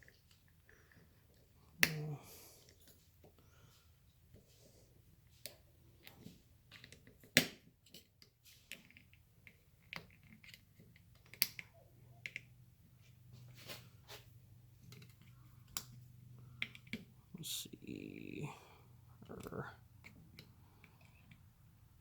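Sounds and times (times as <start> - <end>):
small clicks and snaps: 0.0 - 3.4, 5.4 - 12.6, 14.8 - 17.1.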